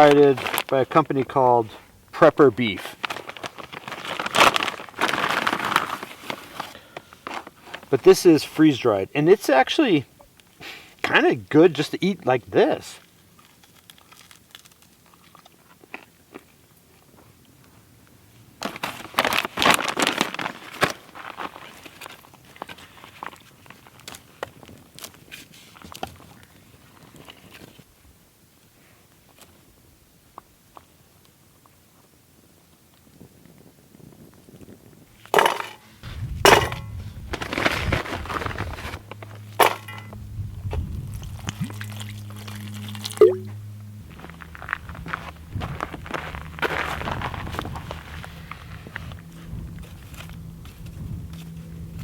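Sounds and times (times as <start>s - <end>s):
person crunching dry food: 3.0s - 7.7s, 13.1s - 17.0s, 41.1s - 43.2s
rustling and scraping: 3.0s - 7.9s, 18.6s - 27.9s, 35.1s - 43.2s, 44.1s - 52.0s
low steady hum: 35.2s - 52.0s
metal cookware clanking: 35.4s - 35.8s, 36.5s - 36.9s, 39.6s - 40.1s.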